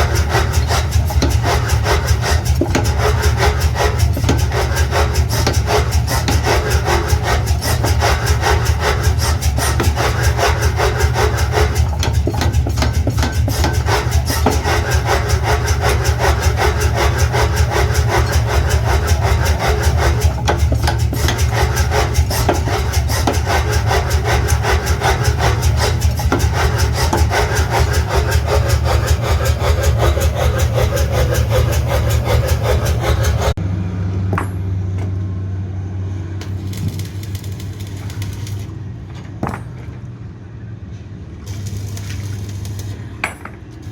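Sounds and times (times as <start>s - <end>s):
metalworking machine rasping chatter: 0.0s - 33.6s, 36.4s - 38.8s, 41.5s - 43.2s.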